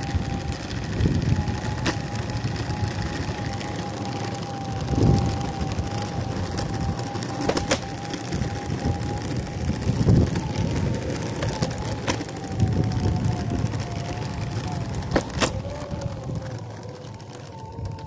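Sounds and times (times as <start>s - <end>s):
electric motor whine: 0.0s - 18.0s
wheels rumbling on pavement: 0.0s - 18.0s
sharp clicks from motor: 10.0s - 18.0s.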